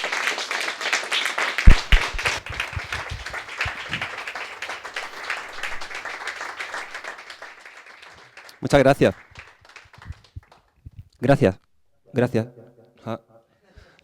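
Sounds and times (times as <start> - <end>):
audience applauding: 0.0 - 10.8
low thumps: 1.7 - 4.0.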